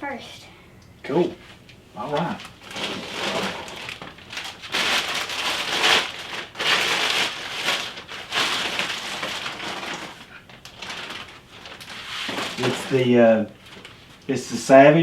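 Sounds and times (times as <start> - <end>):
packaging rustling and crinkling: 2.0 - 14.2.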